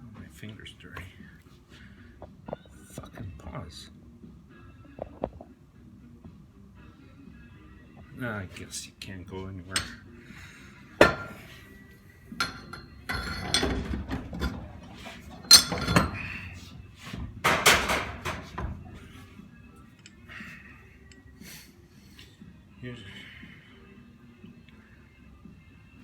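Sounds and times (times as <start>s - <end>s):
metal tools knocking on metal: 9.7s - 10.0s, 11.0s - 11.5s, 12.4s - 16.5s, 17.3s - 19.1s.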